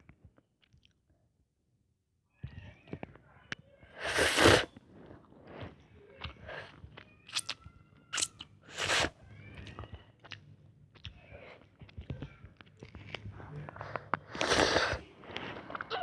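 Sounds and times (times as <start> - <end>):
person chewing noodles: 6.4 - 9.1, 9.7 - 15.9.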